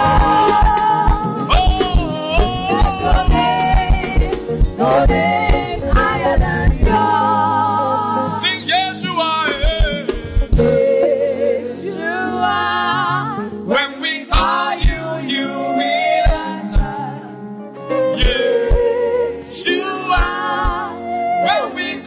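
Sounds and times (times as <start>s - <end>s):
instrumental backing with drum beat: 0.0s - 7.4s, 8.4s - 11.2s, 14.4s - 15.2s, 16.1s - 17.1s, 18.2s - 19.0s, 20.1s - 21.0s
gospel singing: 0.0s - 22.0s
voice holding wavering notes: 1.5s - 4.1s.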